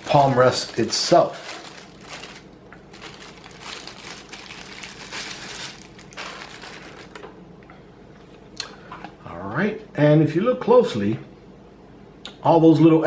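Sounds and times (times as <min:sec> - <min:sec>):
packaging crinkling and rustling: 0:00.0 - 0:07.4.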